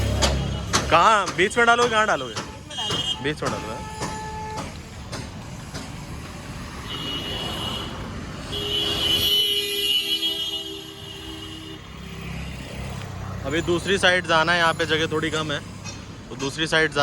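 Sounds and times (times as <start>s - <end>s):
road vehicle noise: 0.0s - 17.0s.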